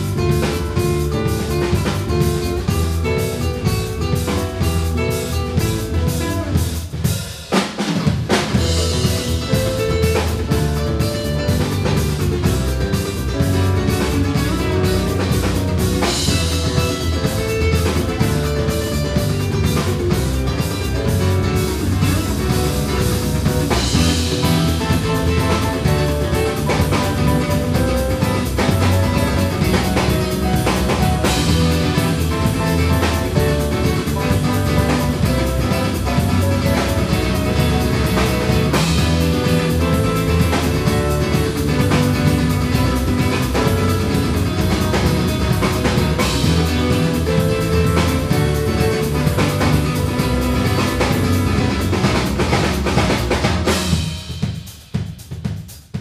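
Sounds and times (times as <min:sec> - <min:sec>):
drum kit beat: 0:00.0 - 0:56.0
live rock band playing: 0:00.0 - 0:56.0.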